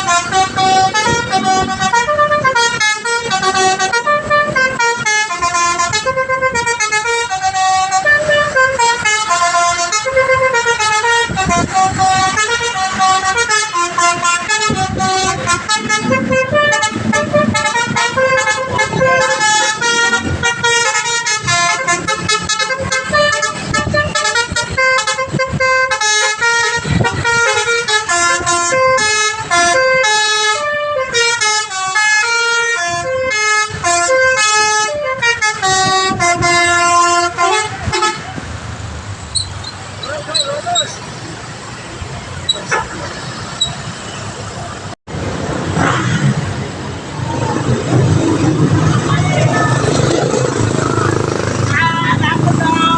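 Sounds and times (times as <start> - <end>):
multi-tone bus horn melody: 0.0 - 38.5, 42.0 - 44.4.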